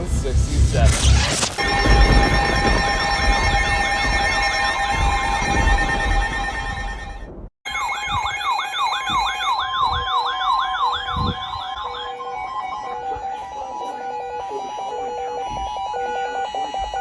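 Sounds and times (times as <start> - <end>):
steady alarm tones: 0.0 - 17.0
siren-like alarm warble: 0.3 - 17.0
short beeps: 0.9 - 14.0.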